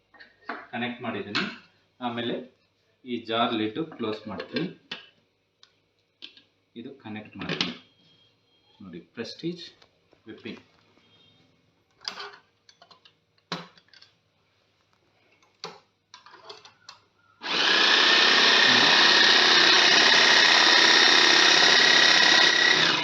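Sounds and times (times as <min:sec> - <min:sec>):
electric chopper motor whining: 0:17.4 - 0:23.0.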